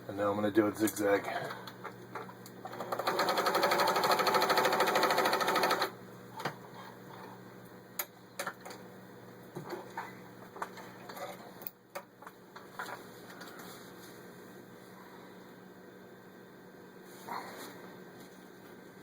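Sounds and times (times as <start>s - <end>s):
sewing machine stitching: 2.6s - 5.9s.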